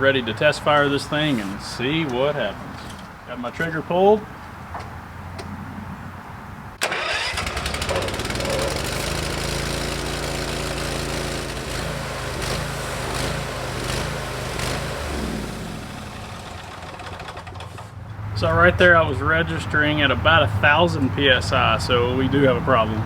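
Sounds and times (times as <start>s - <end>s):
pressure washer engine drone: 6.8s - 23.0s
water spray hissing: 7.8s - 15.9s.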